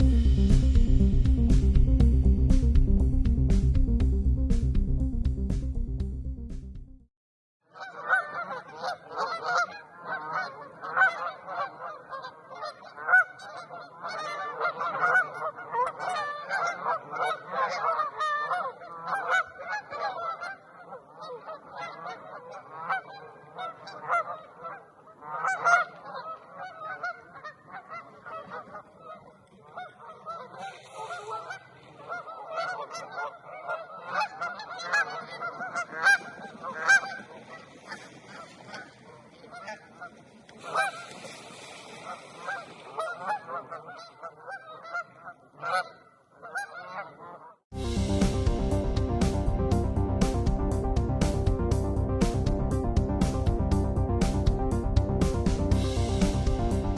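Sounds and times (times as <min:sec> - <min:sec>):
geese honking: 0:07.7 - 0:47.6.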